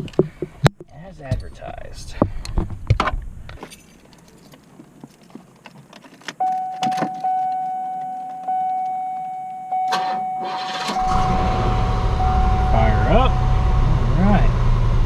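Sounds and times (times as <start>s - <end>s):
keys jingling and clicking: 3.6s - 10.3s
dashboard warning chime: 6.4s - 14.1s.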